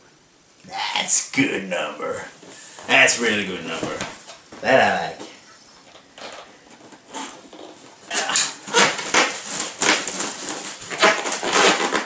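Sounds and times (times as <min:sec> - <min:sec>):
box packaging rustling and scraping: 0:05.8 - 0:12.0.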